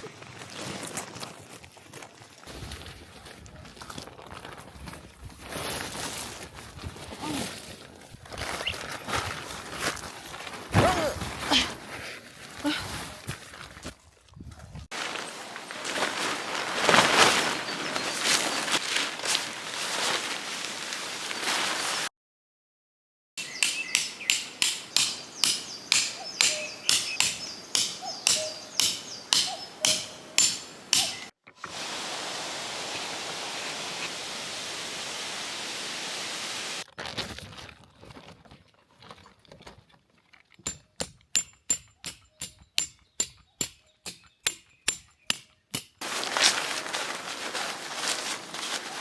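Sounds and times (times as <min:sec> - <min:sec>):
mallet hammering tent pegs: 0:23.4 - 0:31.3
steady hiss: 0:30.0 - 0:36.8.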